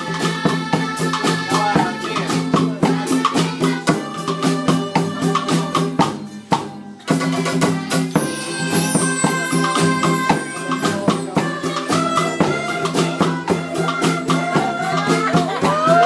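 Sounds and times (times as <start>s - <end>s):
rattling hand percussion: 0.0s - 16.0s
pitch-gliding melodic lines: 8.2s - 11.4s.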